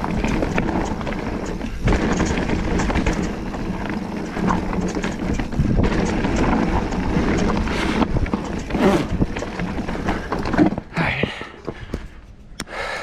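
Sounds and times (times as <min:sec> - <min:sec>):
wind buffeting microphone: 0:00.0 - 0:10.3
bike chain and frame rattling: 0:00.0 - 0:12.4
bike tyres on rocky trail: 0:00.0 - 0:13.0.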